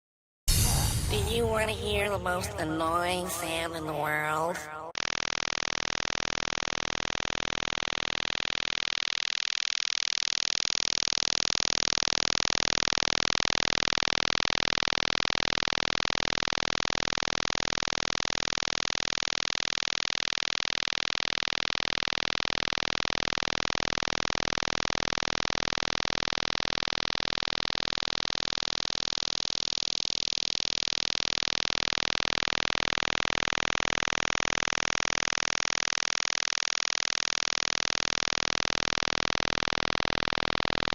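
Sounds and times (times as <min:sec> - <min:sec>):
shortwave radio buzz: 0:00.5 - 0:05.0.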